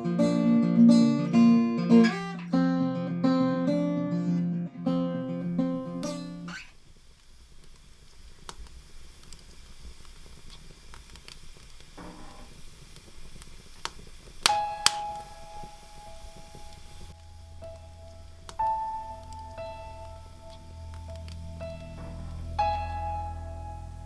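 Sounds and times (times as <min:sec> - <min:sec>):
acoustic guitar strumming chords: 0:00.0 - 0:06.5, 0:14.5 - 0:24.0
sharp clicks: 0:13.8 - 0:15.2.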